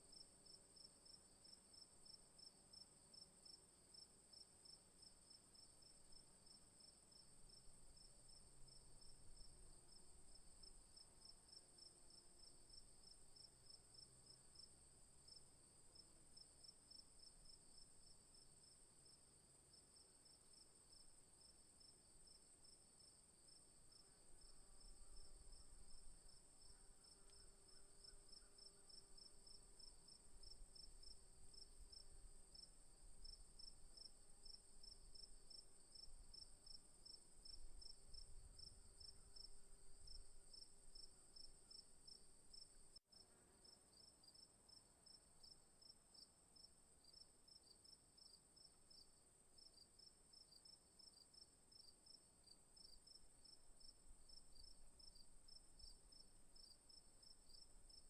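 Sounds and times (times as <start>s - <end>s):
insects chirping: 23.4s - 43.0s.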